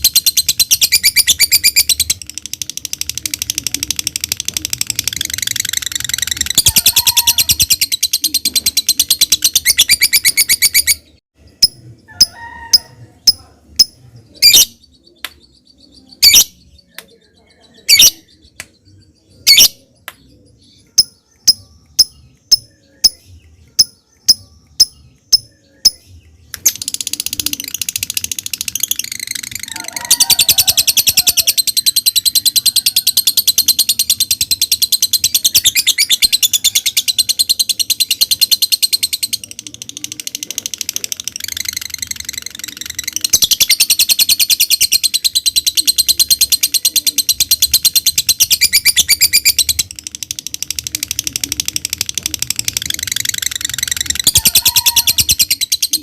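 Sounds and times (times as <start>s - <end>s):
lovebird chattering trill: 0.0s - 14.9s, 17.9s - 18.3s, 26.6s - 56.0s
lovebird chirping: 0.0s - 56.0s.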